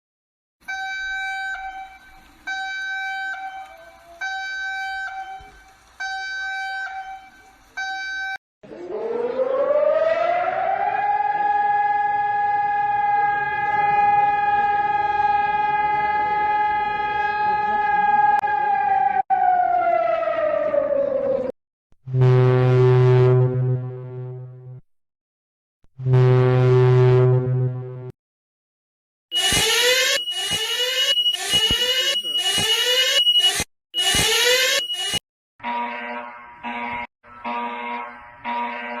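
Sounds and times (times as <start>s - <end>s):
civil defence siren winding up: 0.6s - 21.5s, 29.3s - 35.2s
short high alert tones: 29.3s - 35.2s.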